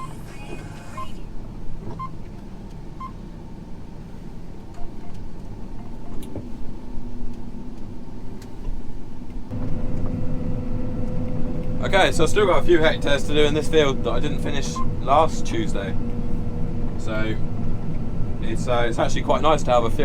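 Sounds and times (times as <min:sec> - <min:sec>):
short electronic beeps: 0:00.0 - 0:01.2
combine harvester engine running: 0:09.5 - 0:20.0.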